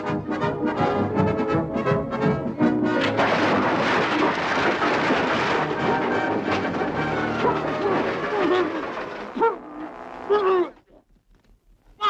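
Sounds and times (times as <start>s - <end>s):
orchestral cartoon music: 0.0s - 3.2s.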